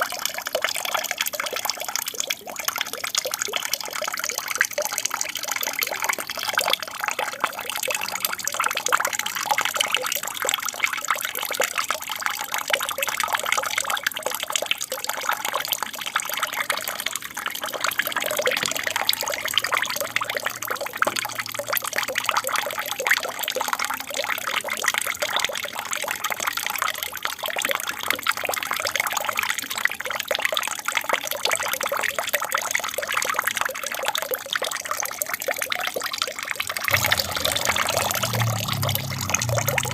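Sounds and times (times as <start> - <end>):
water trickling down small waterfall: 0.0 - 39.9.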